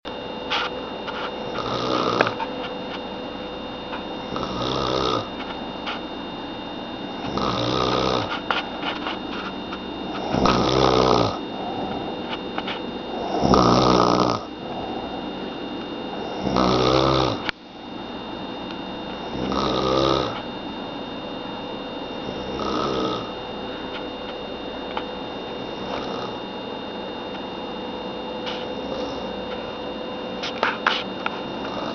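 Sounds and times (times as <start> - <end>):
woman snoring loudly: 1.4 - 2.4, 4.3 - 5.3, 7.2 - 8.3, 10.2 - 12.0, 13.1 - 15.2, 16.2 - 17.4, 19.3 - 20.4, 22.2 - 23.3, 25.8 - 26.4, 28.8 - 29.3, 31.7 - 31.9.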